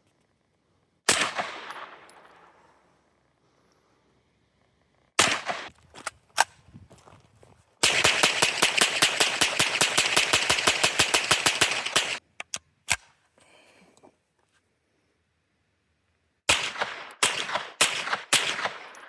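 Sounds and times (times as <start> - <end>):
single gunshots: 1.1 - 2.5, 5.2 - 5.7, 7.8 - 12.2, 16.5 - 19.0
rapid automatic gunfire: 7.8 - 12.2.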